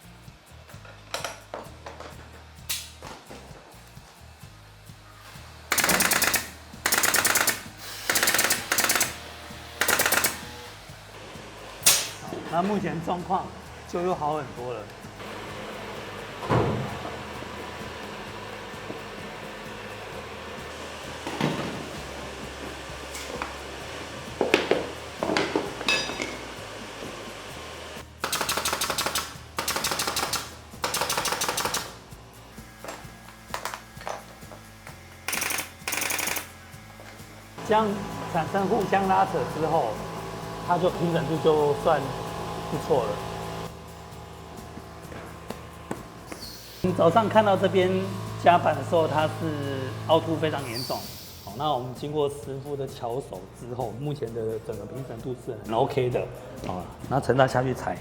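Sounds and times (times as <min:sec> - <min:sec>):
pneumatic nail gun firing: 0:02.7 - 0:03.0, 0:05.7 - 0:10.8, 0:11.8 - 0:12.3, 0:28.0 - 0:43.7, 0:45.0 - 0:51.7
nail gun firing into plywood: 0:05.7 - 0:09.2, 0:09.8 - 0:10.6, 0:11.8 - 0:12.2, 0:28.2 - 0:32.0, 0:35.3 - 0:36.6.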